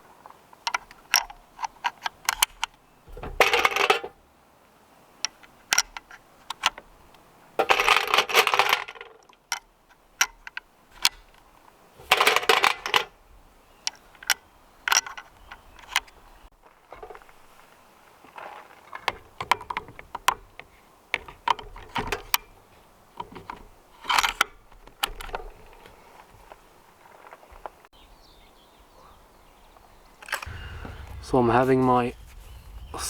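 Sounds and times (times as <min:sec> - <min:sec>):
scraping or rustling: 0:30.4 - 0:33.0.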